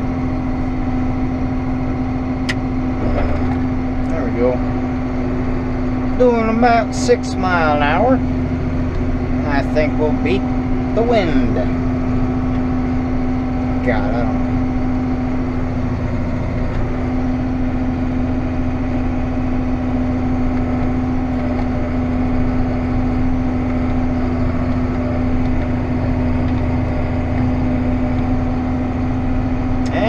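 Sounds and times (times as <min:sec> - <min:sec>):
diesel engine droning: 0:00.0 - 0:30.0.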